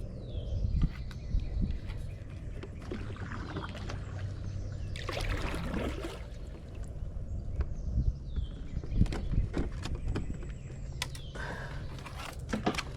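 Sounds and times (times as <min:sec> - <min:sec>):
water splash: 0:04.9 - 0:06.8.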